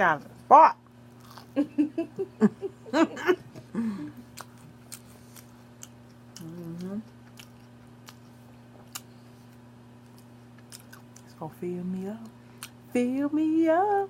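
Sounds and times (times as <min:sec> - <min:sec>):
person chewing food: 0:01.1 - 0:01.6, 0:04.2 - 0:11.3
person humming: 0:03.0 - 0:04.2, 0:06.4 - 0:07.1.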